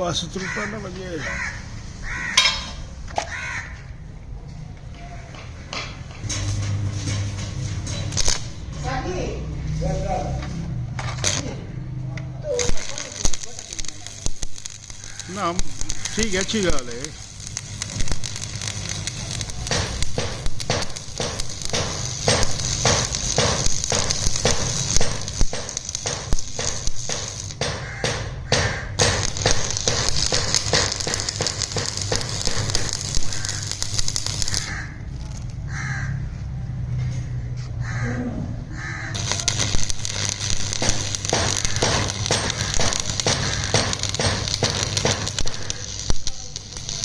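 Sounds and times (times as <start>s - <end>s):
hammer striking metal: 2.4s - 3.0s, 18.5s - 34.4s, 39.2s - 46.9s.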